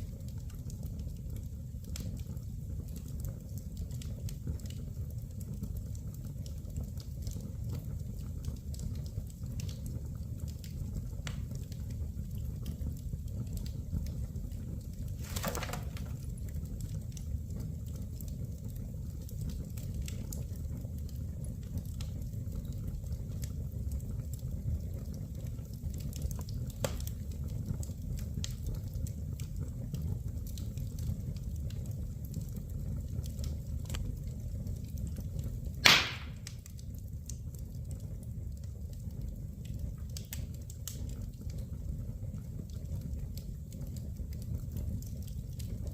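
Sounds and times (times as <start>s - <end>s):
wood fire crackling: 0.0s - 45.9s
loud sharp pop of fire: 15.2s - 16.1s, 35.8s - 36.6s.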